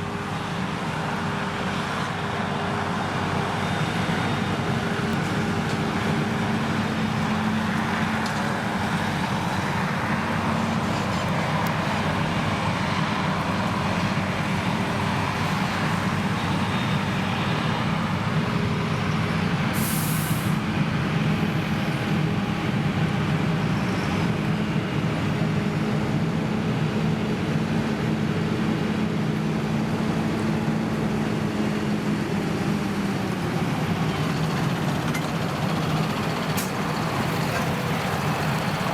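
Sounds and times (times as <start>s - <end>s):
harvester machine drone: 0.0s - 38.9s
short sharp hiss: 19.7s - 20.6s.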